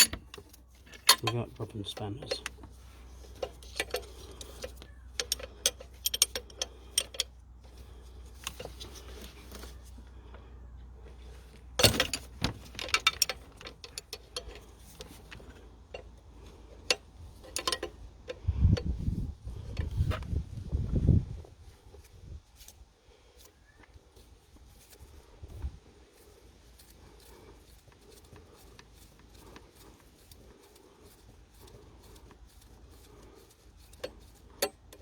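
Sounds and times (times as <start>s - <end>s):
metal spanners clinking: 0.0s - 2.6s, 3.2s - 7.3s, 11.8s - 16.1s, 16.8s - 18.0s.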